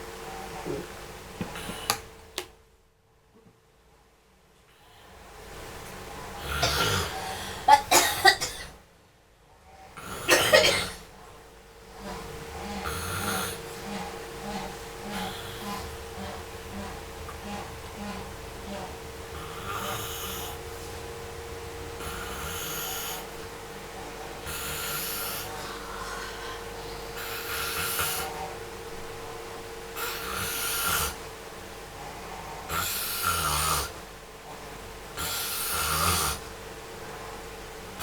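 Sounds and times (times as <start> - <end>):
person snoring: 6.4 - 7.9, 12.1 - 16.0, 19.3 - 20.7, 22.0 - 23.4, 24.4 - 28.4, 30.0 - 31.2, 32.5 - 34.0, 35.2 - 36.5.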